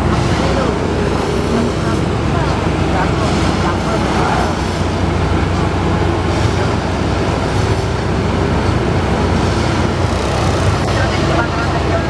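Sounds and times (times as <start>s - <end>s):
diesel engine drone: 0.0s - 12.0s.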